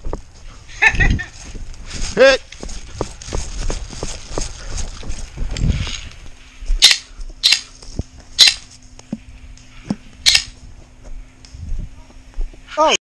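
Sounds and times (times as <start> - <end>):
airsoft gun shots: 8.4 - 8.6, 10.3 - 10.6.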